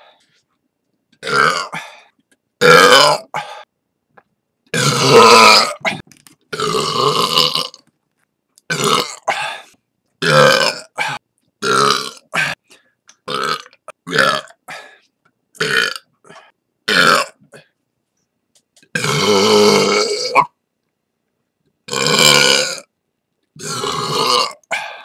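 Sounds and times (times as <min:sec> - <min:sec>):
person burping: 0:01.2 - 0:02.0, 0:02.6 - 0:03.7, 0:04.7 - 0:07.8, 0:08.7 - 0:14.9, 0:15.6 - 0:17.8, 0:18.9 - 0:20.6, 0:21.9 - 0:22.9, 0:23.6 - 0:25.0.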